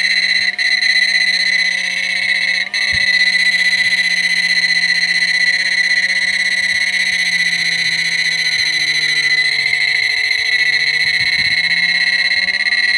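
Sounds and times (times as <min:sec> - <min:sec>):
inverter high-pitched whine: 0:00.0 - 0:12.9.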